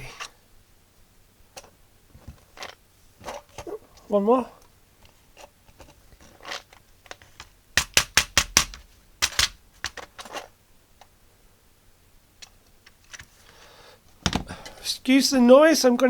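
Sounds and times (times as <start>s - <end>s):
keyboard parts clicking: 7.2s - 10.3s.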